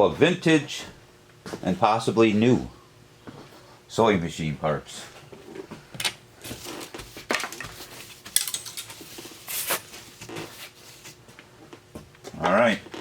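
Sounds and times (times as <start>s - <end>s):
rustling scrape: 6.4s - 11.2s
metal parts clinking: 8.3s - 9.1s.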